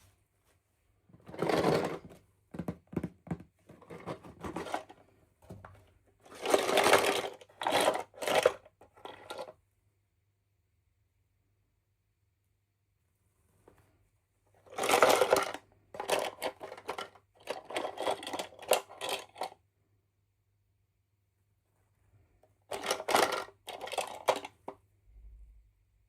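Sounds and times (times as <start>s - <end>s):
plastic toy pieces rattling: 6.3s - 9.5s, 14.7s - 19.6s, 22.7s - 24.7s.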